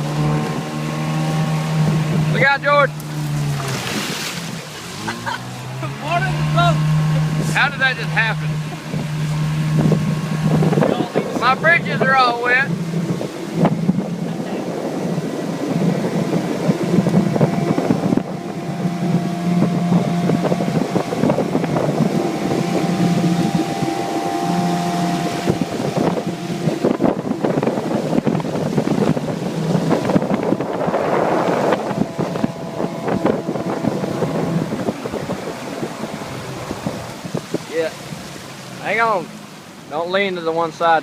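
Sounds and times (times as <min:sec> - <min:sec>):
outboard motor running: 0:00.0 - 0:41.0
wind buffeting microphone: 0:00.0 - 0:41.0.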